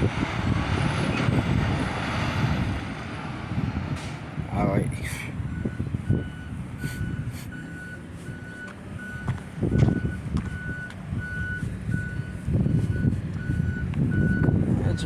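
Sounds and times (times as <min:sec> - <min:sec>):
diesel engine rumble: 0:00.0 - 0:15.0
backup alarm beeping: 0:05.4 - 0:15.0.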